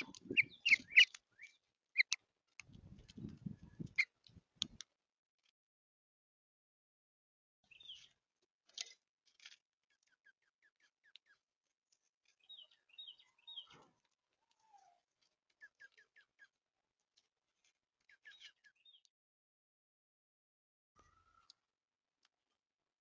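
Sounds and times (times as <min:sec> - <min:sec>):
songbird chirps and calls: 0:00.0 - 0:04.8, 0:07.6 - 0:08.9, 0:09.9 - 0:19.1
small clicks: 0:00.0 - 0:05.6, 0:07.9 - 0:10.2.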